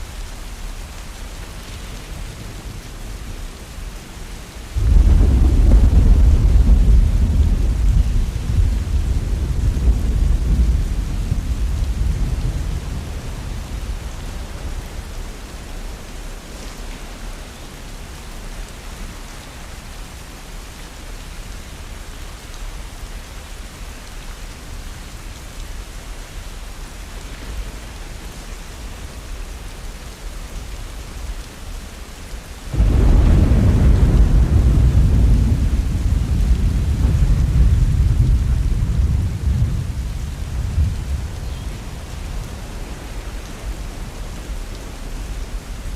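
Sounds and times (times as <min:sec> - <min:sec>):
steady rain falling: 0:00.0 - 0:45.9
loud thunder roll: 0:04.8 - 0:14.0, 0:32.7 - 0:42.3
thunder rumbling: 0:04.8 - 0:15.5, 0:32.7 - 0:45.9.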